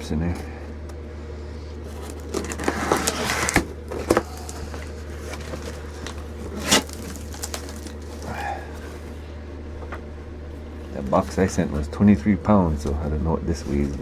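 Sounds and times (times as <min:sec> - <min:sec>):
steady low hum: 0:00.0 - 0:14.0
packing rustling: 0:01.8 - 0:09.2.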